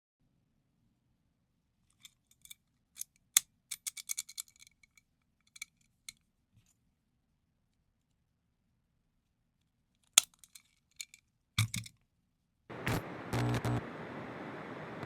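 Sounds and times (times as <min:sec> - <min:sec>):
padlock metal clicks and clinks: 0:02.0 - 0:05.9, 0:10.0 - 0:12.0.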